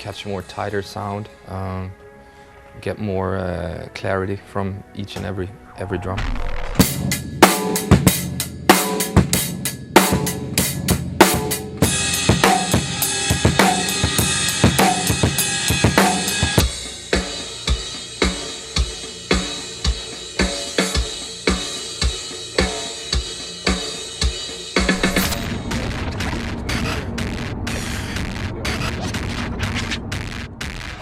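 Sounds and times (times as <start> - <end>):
rock drum kit playing: 6.4 - 28.9.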